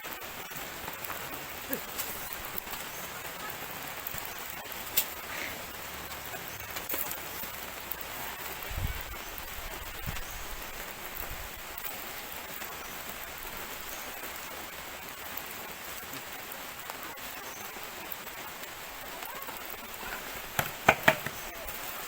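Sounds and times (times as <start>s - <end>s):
light drizzle pattering: 0.0s - 22.0s
sharp knocks: 20.6s - 21.4s.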